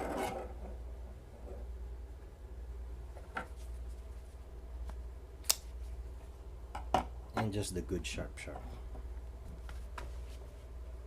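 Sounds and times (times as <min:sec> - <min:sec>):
low room hum: 0:00.0 - 0:11.0.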